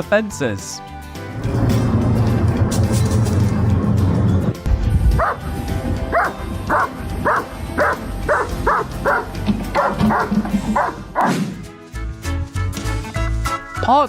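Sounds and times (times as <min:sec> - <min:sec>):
background music: 0:00.0 - 0:14.0
dog barking: 0:05.2 - 0:05.4, 0:06.1 - 0:11.4.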